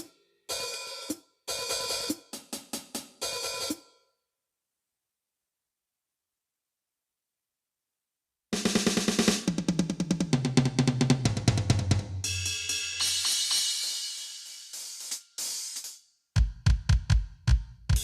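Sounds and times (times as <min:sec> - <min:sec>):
electronic drum fill on toms: 0:08.6 - 0:12.4, 0:16.4 - 0:18.0
heavy bass drum beat: 0:08.6 - 0:13.6, 0:16.4 - 0:18.0.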